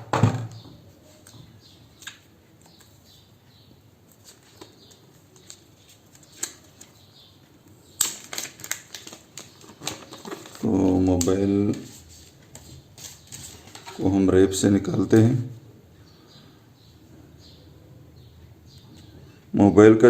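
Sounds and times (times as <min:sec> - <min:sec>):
plastic wrap crackling: 0:07.9 - 0:14.0
packaging rustling and clicks: 0:08.0 - 0:11.4.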